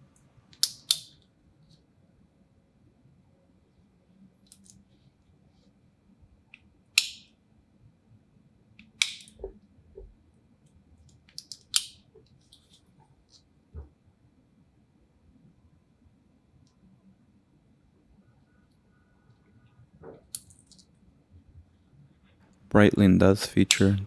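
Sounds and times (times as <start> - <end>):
sharp metal buckle clicks: 0.5 - 1.2, 7.0 - 7.4, 11.3 - 12.0.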